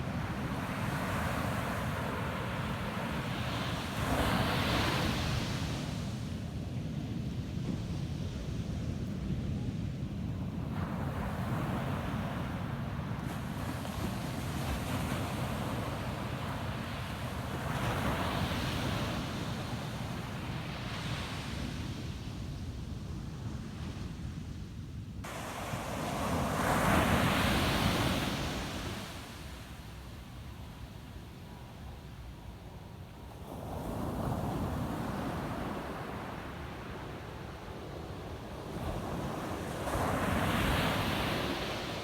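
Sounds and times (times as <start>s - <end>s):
ocean surf washing onto beach: 25.2s - 31.7s.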